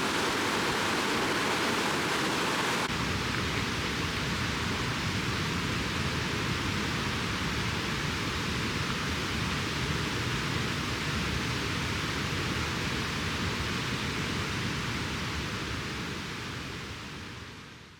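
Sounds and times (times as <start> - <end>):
mountain stream rushing: 0.0 - 3.8.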